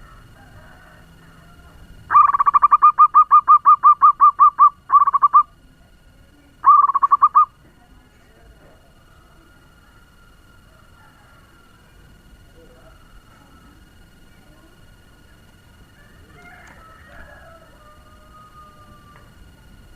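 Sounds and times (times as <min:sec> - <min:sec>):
dove rapid staccato cooing: 0:00.0 - 0:05.6, 0:06.6 - 0:07.6.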